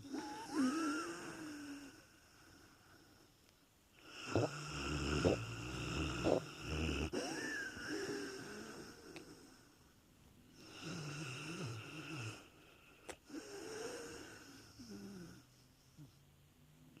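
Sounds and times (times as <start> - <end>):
dog snoring: 4.0 - 7.4, 10.6 - 12.5, 13.3 - 16.2.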